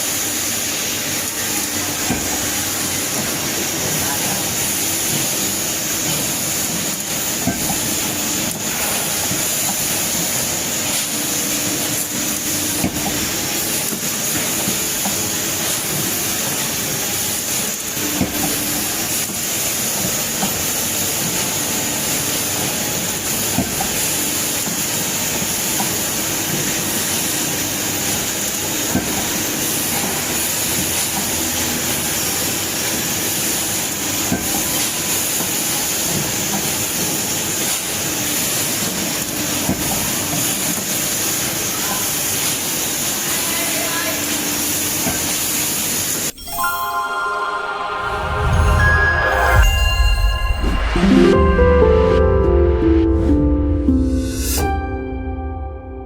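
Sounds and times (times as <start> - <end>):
high whine: 46.3 - 53.4.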